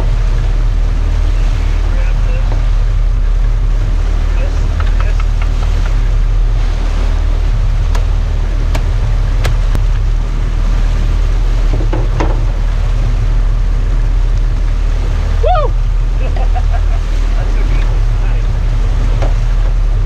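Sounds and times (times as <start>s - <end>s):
boat engine running: 0.0s - 20.0s
water rushing: 0.0s - 20.0s
wind: 0.0s - 20.0s.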